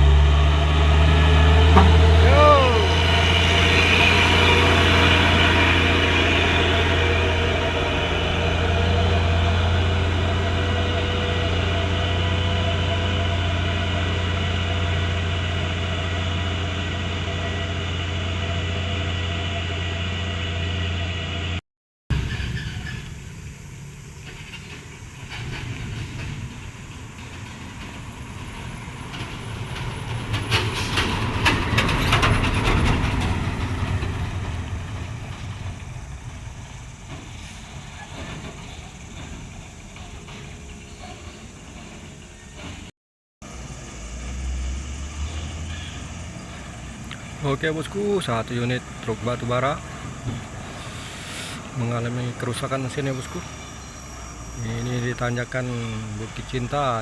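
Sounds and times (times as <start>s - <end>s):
diesel truck engine running: 0.0s - 57.0s
truck grinding past with rattling: 0.0s - 57.0s.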